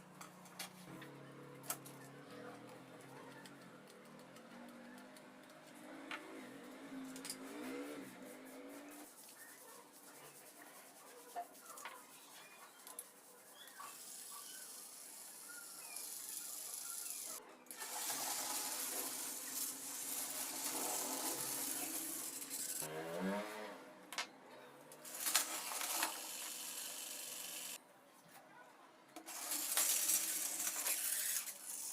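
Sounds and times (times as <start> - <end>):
toy train steam hiss: 14.0 - 22.8, 25.1 - 27.8, 29.3 - 31.9.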